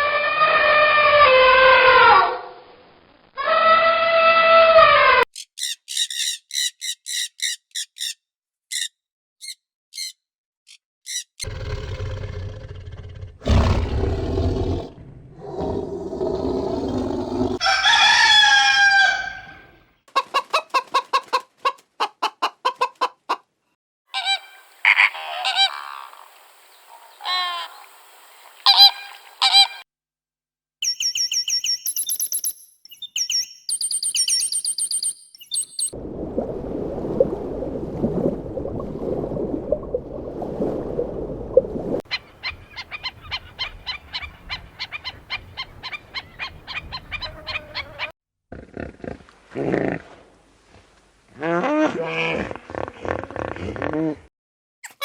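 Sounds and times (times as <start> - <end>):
rooster crowing: 17.6 - 19.7
chickens clucking: 20.1 - 23.5.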